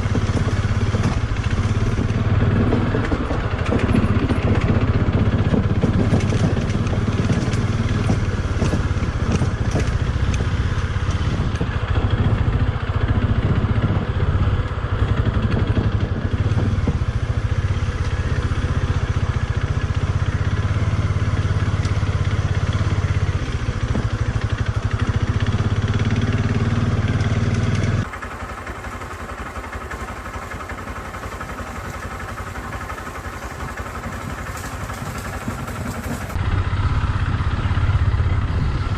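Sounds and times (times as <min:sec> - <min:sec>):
motorcycle engine running: 0:00.0 - 0:38.9
rattle from riding: 0:00.1 - 0:12.5, 0:27.5 - 0:36.4.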